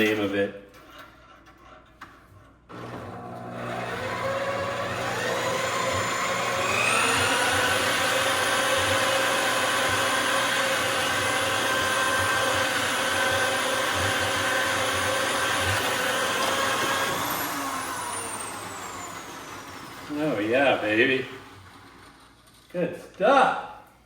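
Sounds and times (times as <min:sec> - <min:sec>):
wire-stripping machine motor whine: 0:02.7 - 0:21.0.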